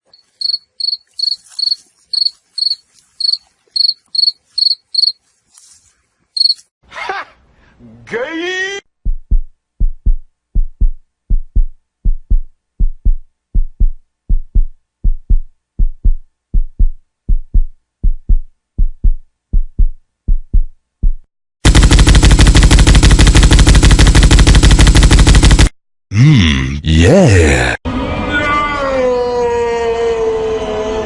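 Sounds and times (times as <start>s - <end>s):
heartbeat thumps: 9.0s - 25.1s
rapid machine-gun fire: 21.6s - 25.7s.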